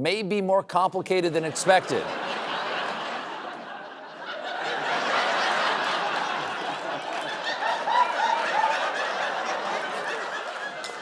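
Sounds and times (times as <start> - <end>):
audience laughing: 1.4 - 11.0
people whooping: 7.0 - 10.3.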